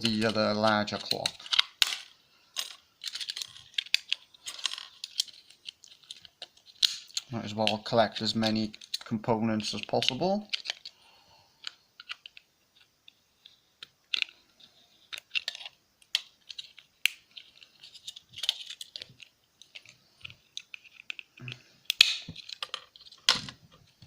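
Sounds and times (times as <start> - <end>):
plastic parts clicking and clattering: 0.0 - 10.9, 11.6 - 24.0
plastic casing snapping: 20.6 - 23.5.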